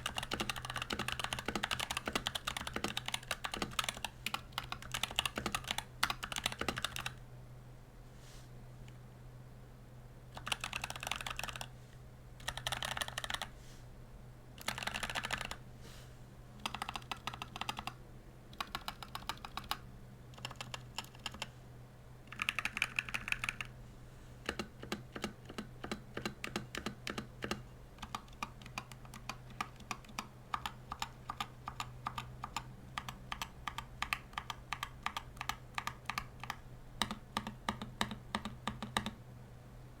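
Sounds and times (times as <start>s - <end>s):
mechanical keyboard typing: 0.0s - 7.2s, 10.4s - 11.7s, 12.4s - 13.5s, 14.6s - 15.6s, 16.6s - 21.5s, 22.3s - 23.7s, 24.4s - 39.2s.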